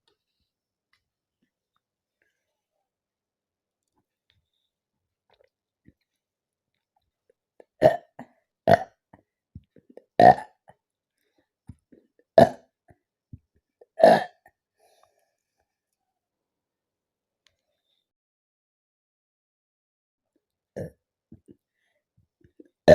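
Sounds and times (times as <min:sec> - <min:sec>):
woman burping loudly: 0:07.8 - 0:09.0, 0:10.2 - 0:10.6, 0:14.0 - 0:14.5.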